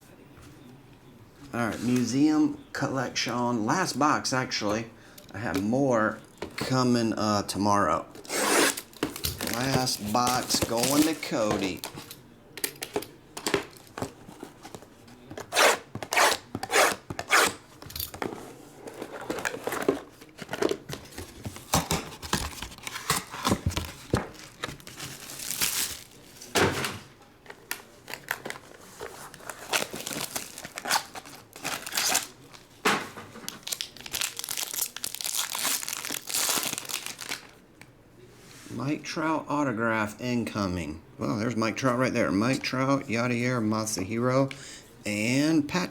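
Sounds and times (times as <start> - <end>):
wrappers tearing and crinkling: 8.2 - 12.2, 21.6 - 26.6, 27.6 - 32.7, 33.4 - 37.6
cards being handled: 8.5 - 12.2.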